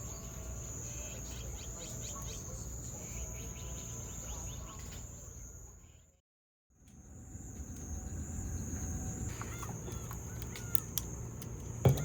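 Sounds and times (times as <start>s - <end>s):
insects trilling: 0.0s - 6.1s, 7.0s - 12.0s.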